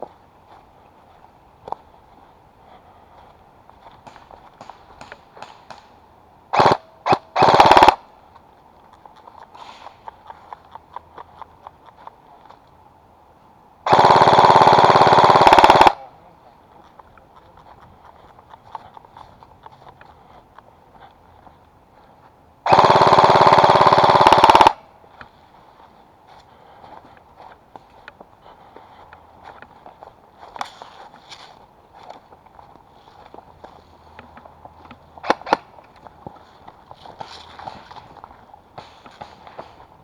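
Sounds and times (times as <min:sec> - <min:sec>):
airsoft gun automatic bursts: 0:06.5 - 0:08.0, 0:13.9 - 0:16.1, 0:22.6 - 0:24.9, 0:35.2 - 0:35.7.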